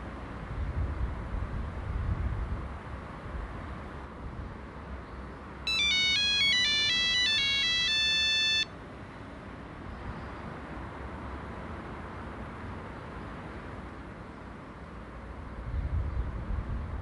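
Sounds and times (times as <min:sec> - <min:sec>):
mobile phone ringtone melody: 0:05.7 - 0:08.7.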